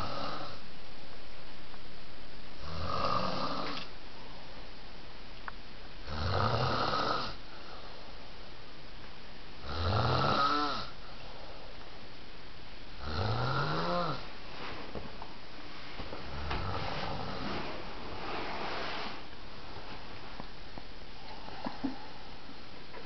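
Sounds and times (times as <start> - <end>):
snoring: 0.0 - 0.6, 2.6 - 3.9, 6.1 - 7.4, 9.6 - 11.0, 13.0 - 14.3, 16.3 - 17.5.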